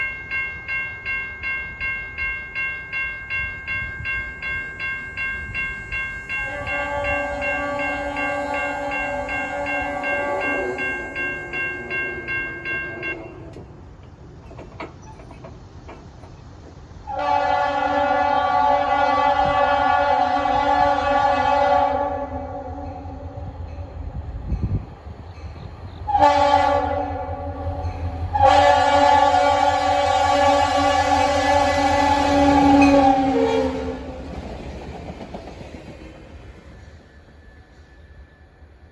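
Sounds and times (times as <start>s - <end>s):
train bell ringing: 0.0s - 13.9s, 22.2s - 35.4s, 36.4s - 38.9s
train horn chord: 6.4s - 13.6s, 17.1s - 23.9s, 26.1s - 34.2s.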